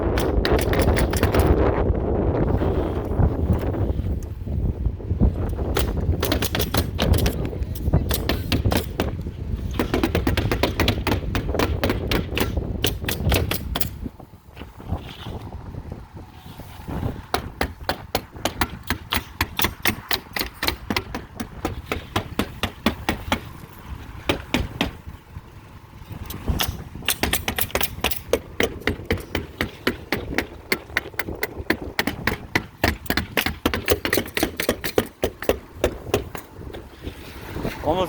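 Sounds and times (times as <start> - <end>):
rapid fastening strikes on roof: 0.0 - 1.6, 5.6 - 14.0, 17.3 - 25.2, 26.3 - 36.9.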